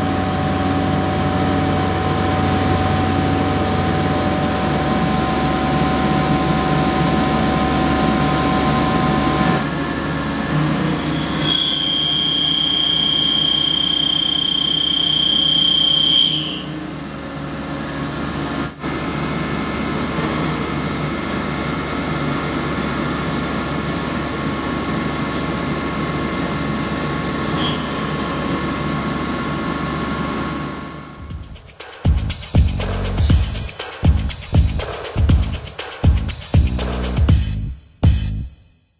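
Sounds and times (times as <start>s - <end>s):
high-pitched cutting whine: 0.0s - 17.4s, 26.5s - 29.6s
milling machine running: 0.0s - 31.1s.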